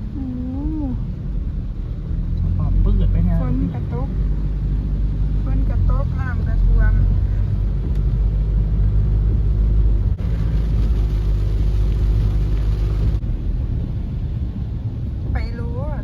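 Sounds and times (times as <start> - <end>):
car engine and tyres rumbling: 0.0 - 16.0
water rushing hiss: 10.2 - 13.2.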